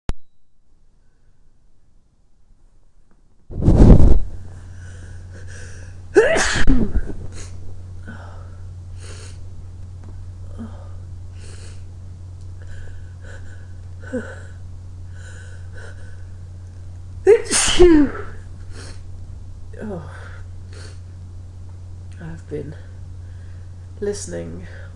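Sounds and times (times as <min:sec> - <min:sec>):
steady low hum: 0:00.1 - 0:24.9
person sneezing loudly: 0:06.2 - 0:07.5, 0:17.3 - 0:18.4.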